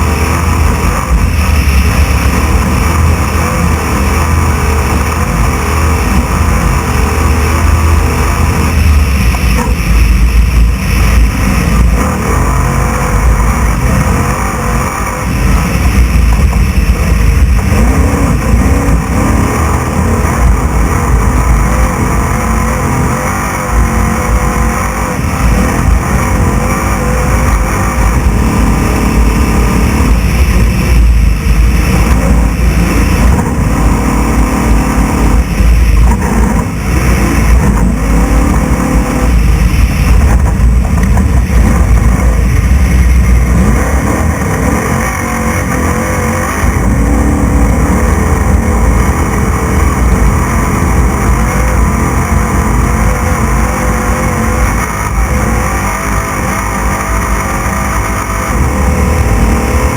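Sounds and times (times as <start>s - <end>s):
truck pounding over rough dirt: 0.0s - 53.6s
truck engine revving: 0.0s - 59.9s.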